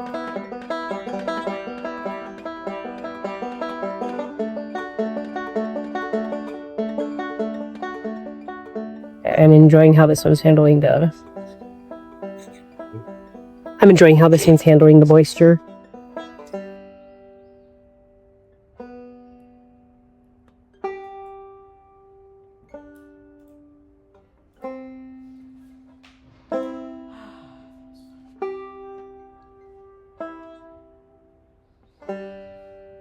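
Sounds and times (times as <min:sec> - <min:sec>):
plucked string notes: 0:00.0 - 0:17.3.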